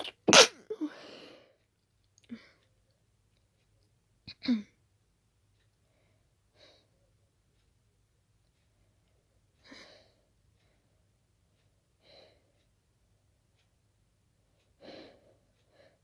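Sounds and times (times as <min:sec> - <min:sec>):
person stifling sneezes: 0:00.0 - 0:00.7.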